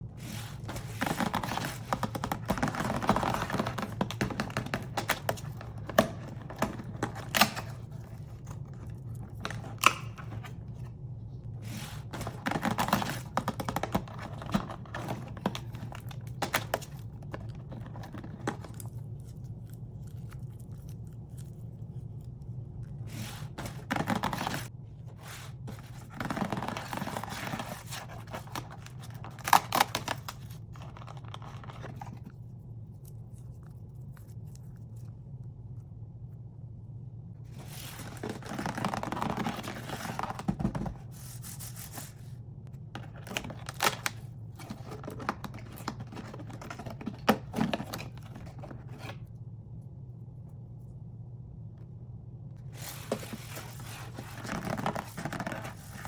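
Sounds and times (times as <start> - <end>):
packaging rustling and tearing: 23.0 - 32.3, 37.5 - 42.4, 43.0 - 49.2, 52.7 - 56.0.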